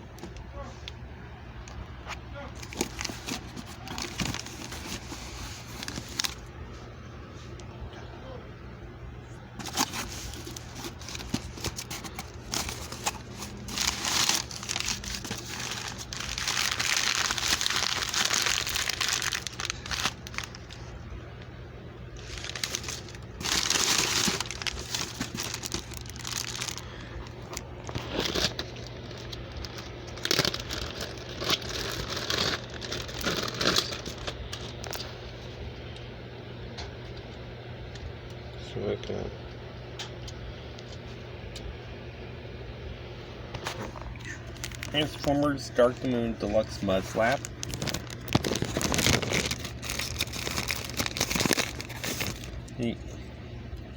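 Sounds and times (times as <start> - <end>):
packaging crinkling and rustling: 2.5 - 6.5, 9.6 - 21.5, 22.2 - 35.6, 43.5 - 53.0.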